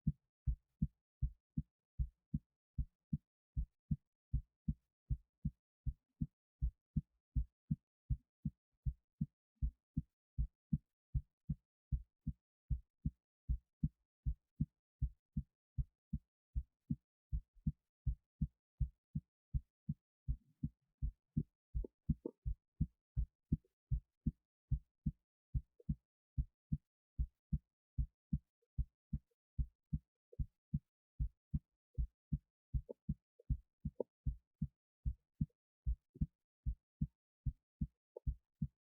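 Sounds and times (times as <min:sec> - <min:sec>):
heartbeat thumps: 0:18.8 - 0:34.4, 0:35.0 - 0:38.7.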